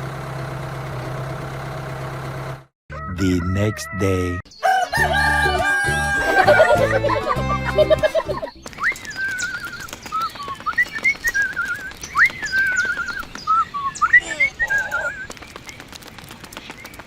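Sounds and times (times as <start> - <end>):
songbird singing whistled phrases: 8.5 - 15.8
faint clicks: 14.7 - 17.0.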